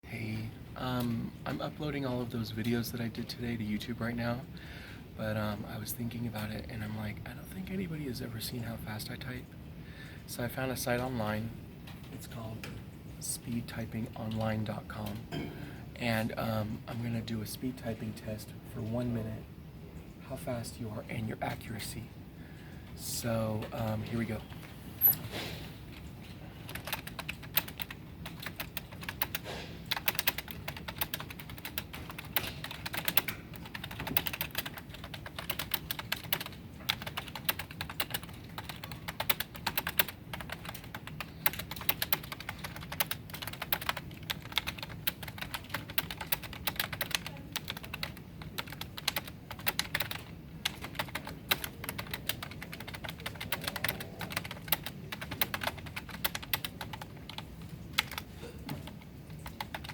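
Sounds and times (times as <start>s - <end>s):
fast typing on keyboard: 25.9s - 59.9s.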